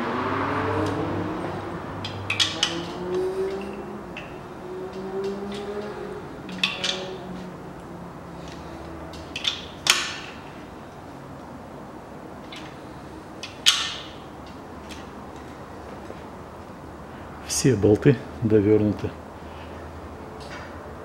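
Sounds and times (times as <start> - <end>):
wrench clicking on bolts: 2.0 - 7.4, 8.4 - 10.5.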